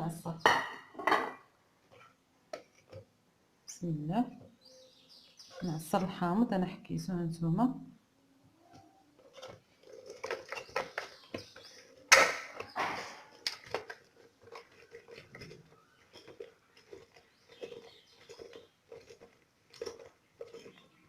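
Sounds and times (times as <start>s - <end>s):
lemon squishing on juicer: 9.2s - 21.0s.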